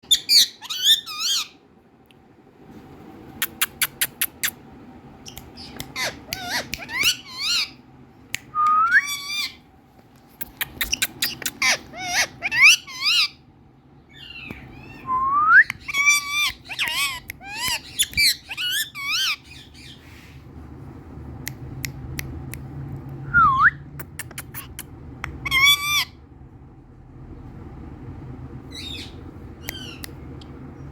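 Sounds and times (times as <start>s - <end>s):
parrot whistling and squawking: 0.0s - 1.6s, 5.6s - 7.8s, 8.7s - 9.6s, 10.6s - 13.4s, 14.2s - 20.0s, 25.4s - 26.2s
parrot clicking: 16.3s - 18.8s.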